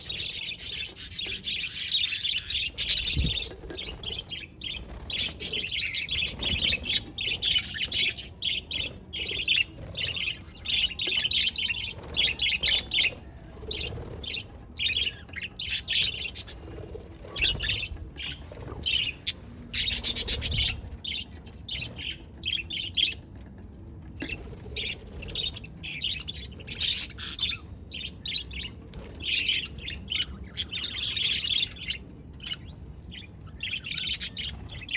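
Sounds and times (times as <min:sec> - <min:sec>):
budgerigars chirping and chattering: 0:00.0 - 0:16.6, 0:17.3 - 0:22.2, 0:28.5 - 0:34.9.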